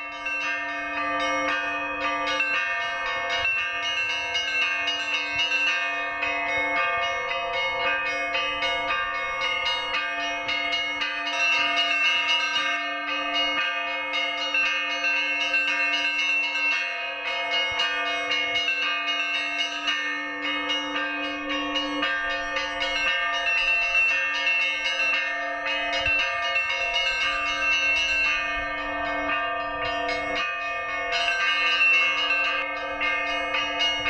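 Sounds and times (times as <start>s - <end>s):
lower bell ringing: 0.0s - 34.0s
small high bells striking: 0.0s - 34.0s.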